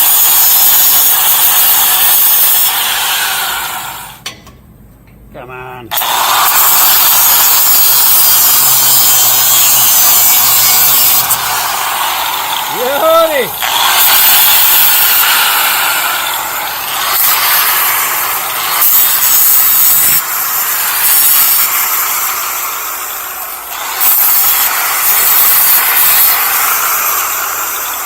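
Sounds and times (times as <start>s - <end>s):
grinder rasping on sheet steel: 6.0s - 28.0s.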